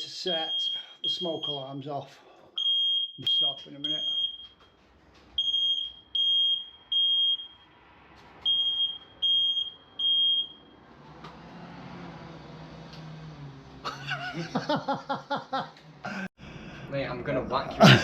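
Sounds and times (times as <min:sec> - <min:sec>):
smoke alarm beeping: 0:00.4 - 0:01.8, 0:02.6 - 0:04.7, 0:05.4 - 0:07.7, 0:08.4 - 0:10.7.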